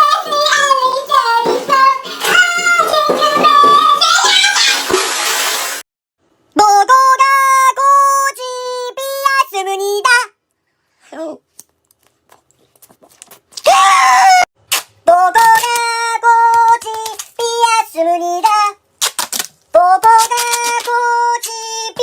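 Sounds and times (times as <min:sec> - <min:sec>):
high voice singing: 0:00.0 - 0:05.1.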